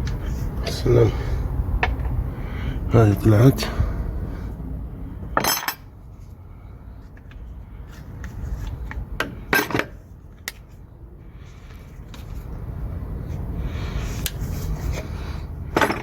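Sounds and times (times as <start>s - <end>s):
metal tools clinking: 5.4s - 5.8s.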